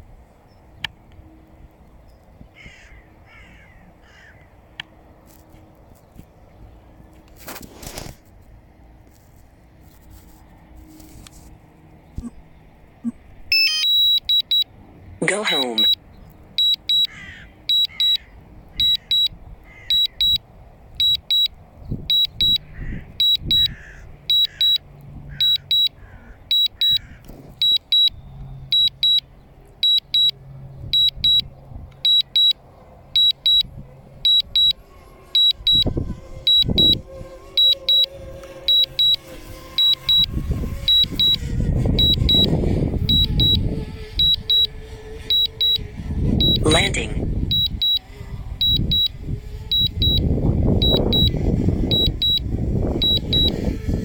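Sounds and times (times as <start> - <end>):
remote controller beeping: 13.0 - 16.0, 16.6 - 17.1, 18.8 - 20.4, 23.2 - 24.8, 31.0 - 32.6, 33.2 - 33.7, 35.4 - 37.0, 37.6 - 42.5, 43.1 - 43.6, 44.2 - 44.7, 45.3 - 45.8, 46.4 - 48.0, 48.6 - 53.6
wind rumble on microphone: 20.8 - 24.1, 33.6 - 54.0.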